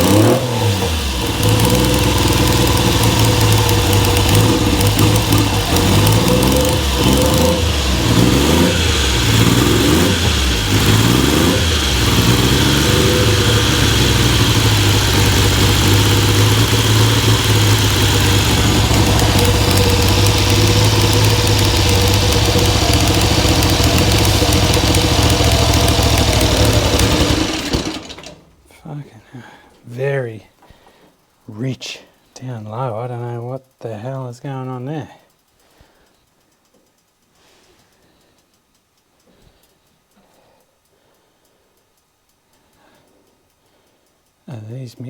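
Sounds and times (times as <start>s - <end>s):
motorcycle engine revving: 0.0s - 28.7s.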